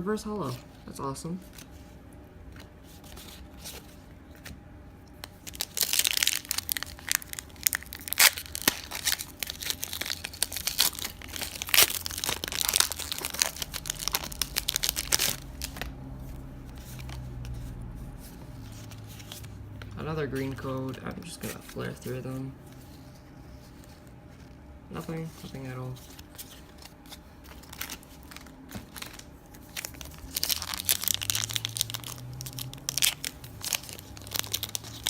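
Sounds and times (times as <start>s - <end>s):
foil wrapper crinkling and tearing: 5.2s - 17.5s, 25.4s - 35.0s.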